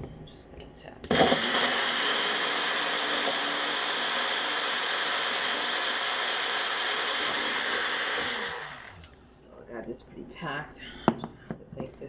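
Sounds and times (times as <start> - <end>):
blender motor whirring: 1.1 - 9.4.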